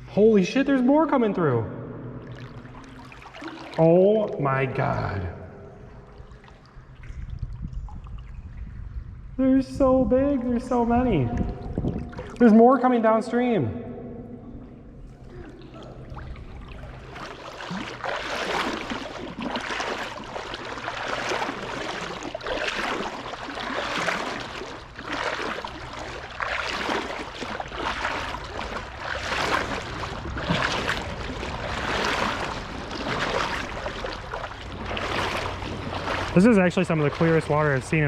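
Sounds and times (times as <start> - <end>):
river water rushing and splashing: 2.2 - 4.4, 15.6 - 38.0.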